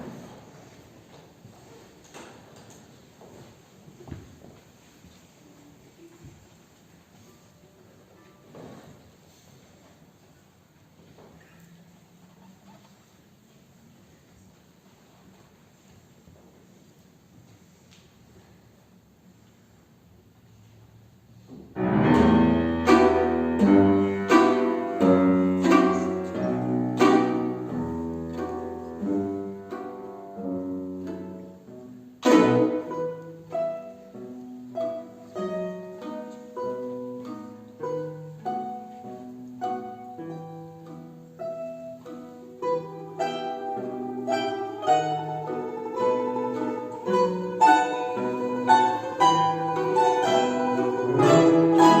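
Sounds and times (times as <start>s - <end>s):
instrumental music: 21.8s - 52.0s.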